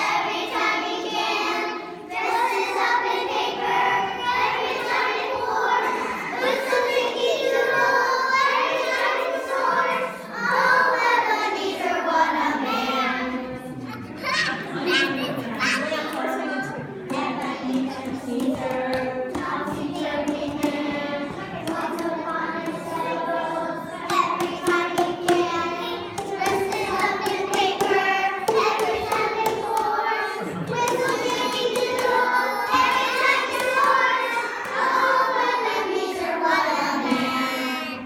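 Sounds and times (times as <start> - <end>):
young children singing: 0.0 - 38.0
hand claps: 30.7 - 35.0.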